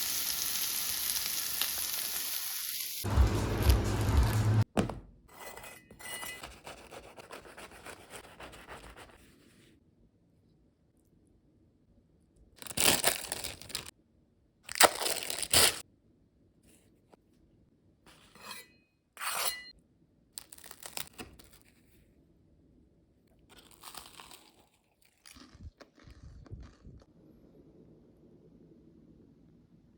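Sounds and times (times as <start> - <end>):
toasted bread crunching: 23.5 - 27.0.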